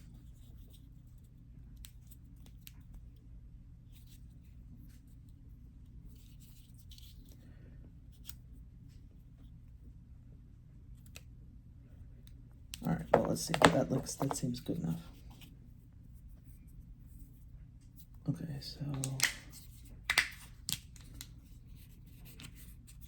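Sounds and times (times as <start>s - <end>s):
handling rustles: 12.9s - 15.5s.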